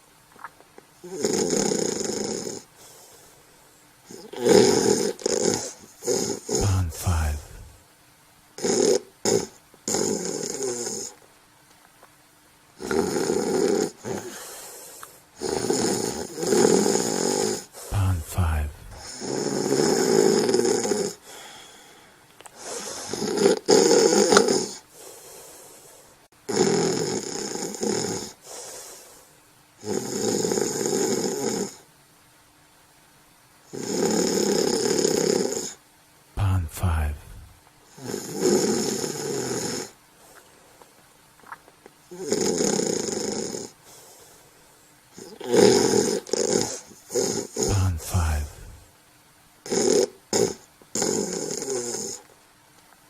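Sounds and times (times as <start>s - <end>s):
person snoring: 1.0s - 2.7s, 4.1s - 7.8s, 15.4s - 22.0s, 22.6s - 24.8s, 36.4s - 39.9s, 42.1s - 43.8s, 45.2s - 48.9s, 49.7s - 52.2s.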